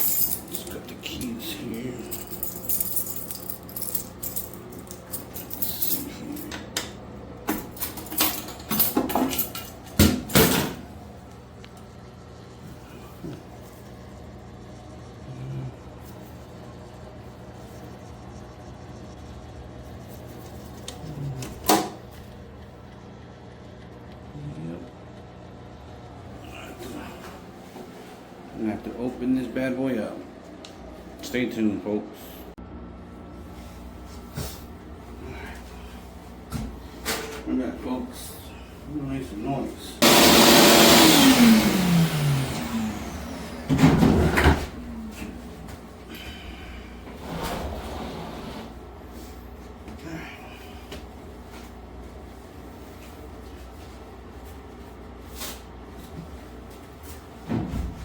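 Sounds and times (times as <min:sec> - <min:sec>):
dryer humming: 0:00.0 - 0:58.0
shop vacuum motor whine: 0:39.8 - 0:48.7.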